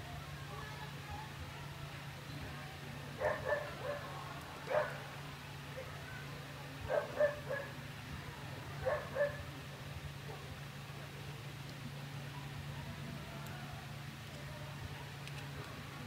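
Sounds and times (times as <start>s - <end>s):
steady low hum: 0.0s - 16.0s
dog barking: 3.2s - 4.1s, 4.7s - 5.0s, 6.9s - 7.8s, 8.8s - 9.5s.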